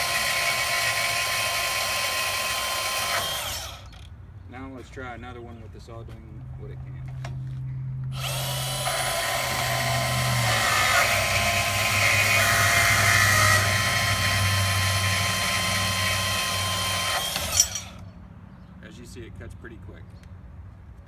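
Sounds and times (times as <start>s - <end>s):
bandsaw cutting metal: 0.0s - 4.1s, 8.1s - 18.0s.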